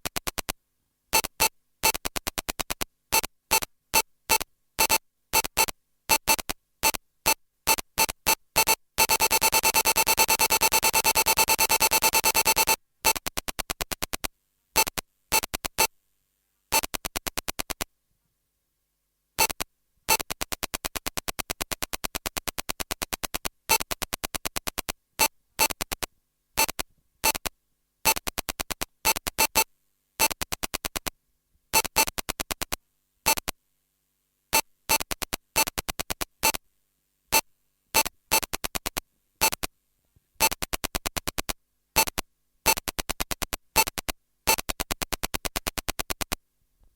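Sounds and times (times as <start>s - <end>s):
harsh electronic clicking pulses: 7.7s - 15.9s, 19.4s - 26.0s, 28.1s - 31.1s, 40.4s - 46.4s.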